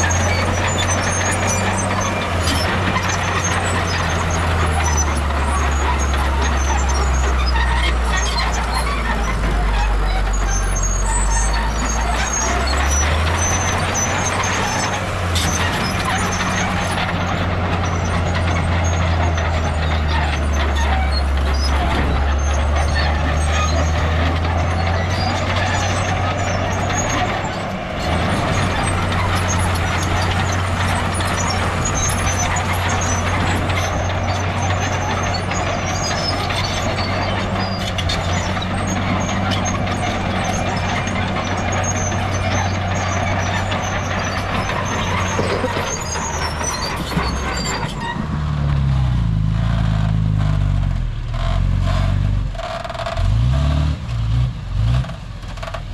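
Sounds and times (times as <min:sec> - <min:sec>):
heavy diesel machinery running: 0:00.0 - 0:55.9
clicks and clatter: 0:11.4 - 0:48.8.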